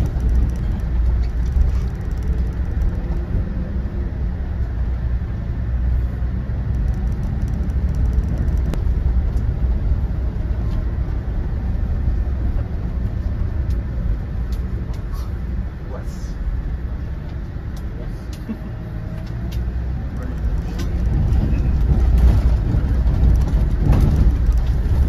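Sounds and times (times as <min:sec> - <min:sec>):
sharp click: 0:00.0 - 0:03.2, 0:06.7 - 0:08.8
bus engine and tyres rumbling: 0:00.0 - 0:25.0.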